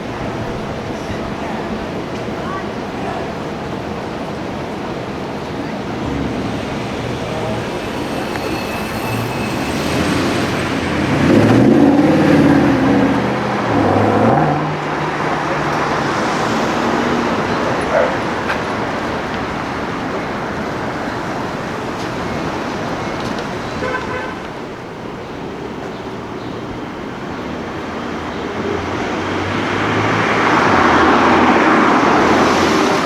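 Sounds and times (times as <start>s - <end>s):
city traffic: 0.0s - 33.0s
car engine revving: 3.4s - 24.0s.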